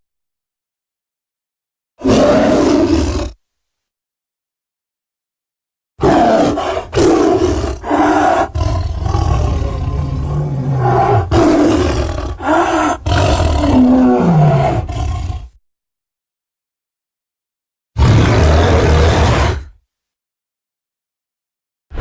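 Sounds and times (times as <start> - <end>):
giant creature roaring: 2.0 - 3.4, 6.0 - 15.5, 18.0 - 19.8.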